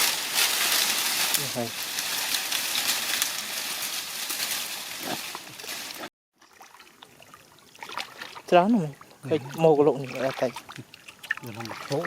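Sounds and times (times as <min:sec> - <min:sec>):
shallow water splashing: 0:06.4 - 0:12.0.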